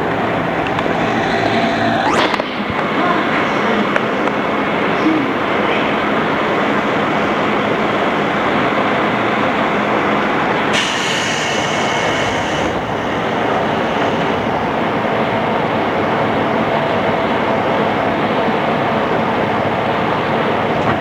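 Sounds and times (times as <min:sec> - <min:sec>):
high-pitched wheel squeal: 0:00.5 - 0:02.7
train wheels rumbling on rail: 0:05.0 - 0:21.0.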